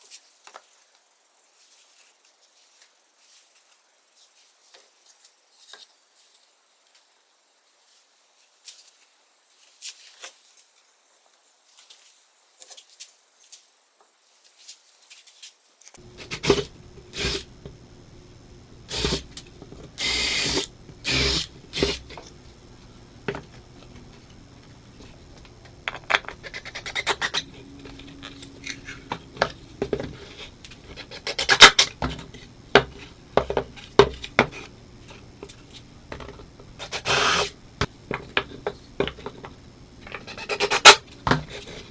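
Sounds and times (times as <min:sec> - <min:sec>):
small knocks: 0:23.1 - 0:31.0, 0:31.9 - 0:36.7, 0:37.8 - 0:40.2
scraping and rubbing on wood: 0:23.2 - 0:37.5, 0:38.1 - 0:41.9.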